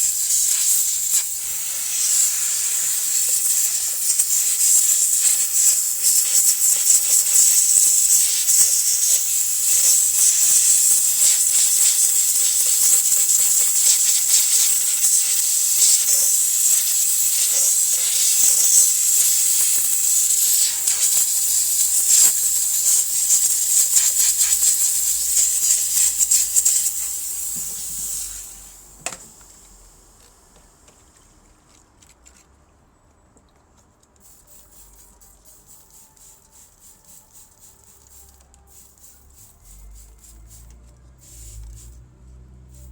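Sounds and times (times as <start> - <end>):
loud hissing water spray: 0.0 - 29.0.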